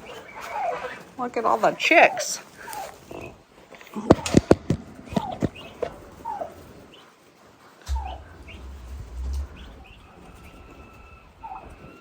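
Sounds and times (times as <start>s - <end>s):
baby turkeys peeping: 0.0s - 12.0s
sharp knock: 7.9s - 9.1s
low rumble: 7.9s - 10.9s.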